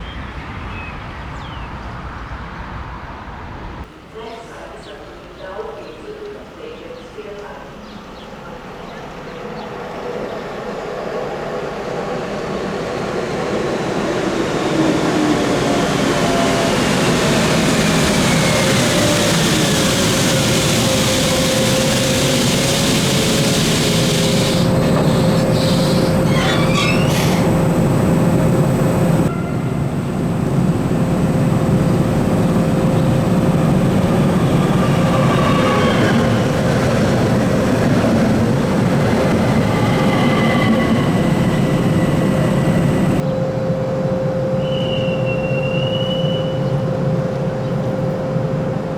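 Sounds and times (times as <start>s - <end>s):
electric train hum and whine: 5.1s - 48.9s
wheel squeals: 16.7s - 28.0s.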